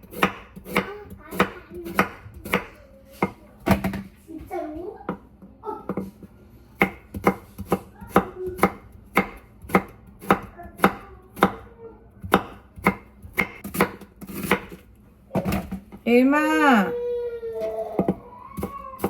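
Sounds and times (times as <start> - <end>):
knife chopping on a board: 0.0 - 4.1, 6.8 - 14.8.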